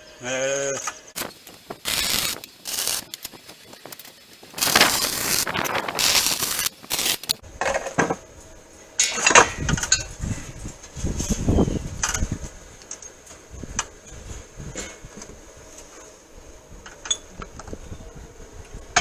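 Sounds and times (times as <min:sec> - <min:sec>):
grinding on steel: 0:01.2 - 0:07.4.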